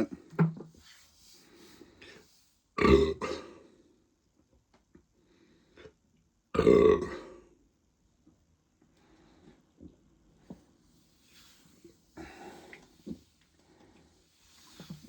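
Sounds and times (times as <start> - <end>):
person burping loudly: 2.8 - 3.5, 6.6 - 7.4.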